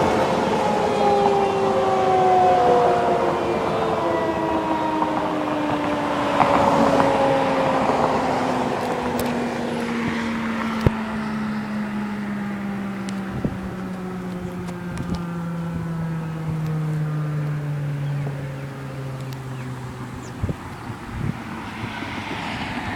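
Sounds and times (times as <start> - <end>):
siren winding down: 0.0 - 22.9
rush of noise: 20.3 - 22.9.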